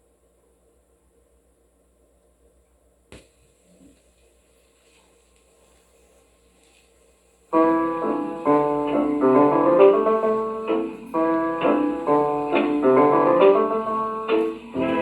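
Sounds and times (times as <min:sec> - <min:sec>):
faint record hum: 0:00.0 - 0:15.0
old dance-band music: 0:07.6 - 0:15.0.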